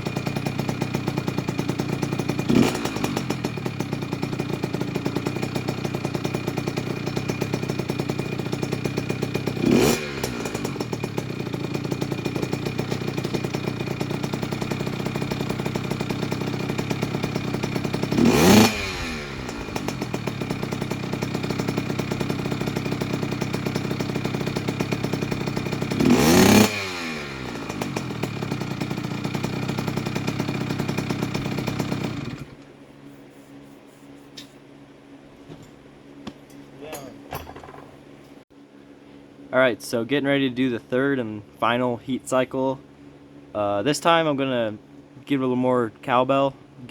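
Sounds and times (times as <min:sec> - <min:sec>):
two-stroke engine idling: 0:00.0 - 0:32.6
engine revving blips: 0:18.0 - 0:21.7, 0:25.9 - 0:28.2.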